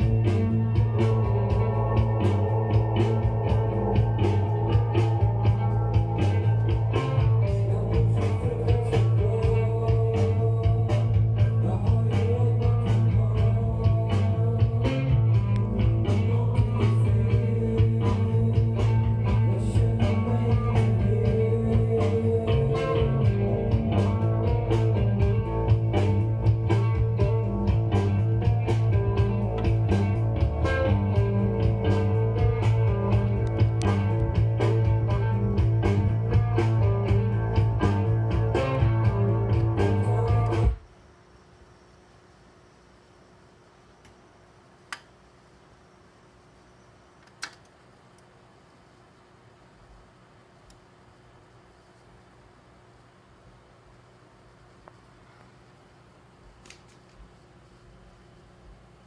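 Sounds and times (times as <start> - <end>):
electric guitar: 0.0 - 40.8
steady drum beat: 0.0 - 40.8
bass: 0.0 - 40.9.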